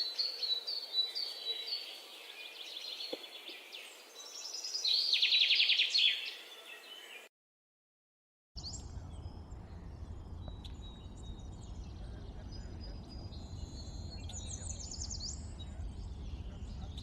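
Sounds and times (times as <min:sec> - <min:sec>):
small birds chirping: 0:00.0 - 0:07.3, 0:08.6 - 0:17.0
low background rumble: 0:08.7 - 0:17.0.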